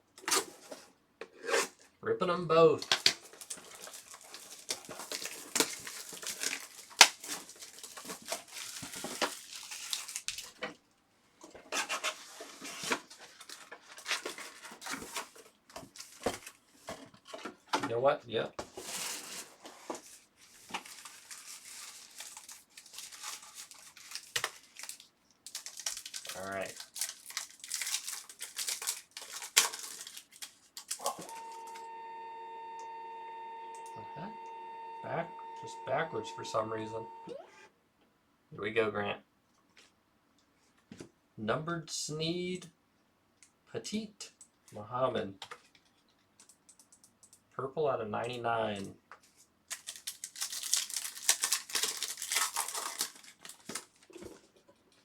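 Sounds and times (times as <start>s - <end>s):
card pack wrappers tearing and crinkling: 2.8s - 10.6s, 11.8s - 16.6s, 18.8s - 31.9s, 49.4s - 54.4s
steady hum of held tones: 31.0s - 37.7s.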